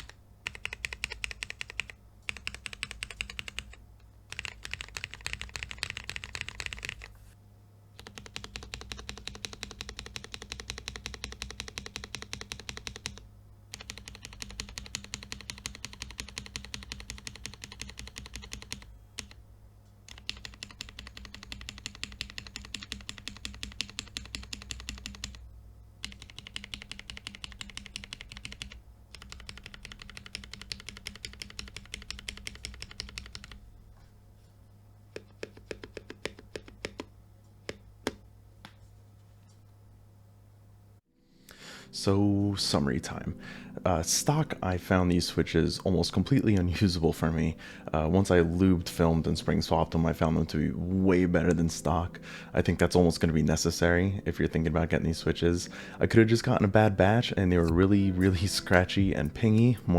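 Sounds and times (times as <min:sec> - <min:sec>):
fast typing on mechanical keyboard: 0:00.0 - 0:07.1, 0:08.0 - 0:19.4, 0:20.1 - 0:25.4, 0:26.0 - 0:33.6, 0:35.2 - 0:37.1.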